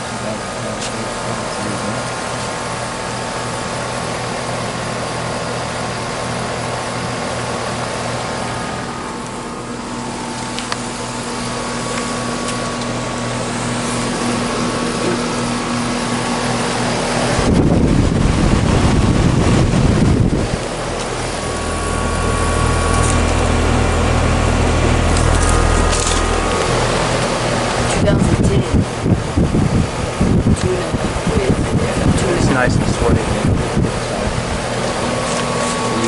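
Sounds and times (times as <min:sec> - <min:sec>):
compressor hum: 0:00.0 - 0:36.0
condenser fan whoosh: 0:00.0 - 0:36.0
wind buffeting microphone: 0:17.1 - 0:24.1, 0:24.8 - 0:35.9.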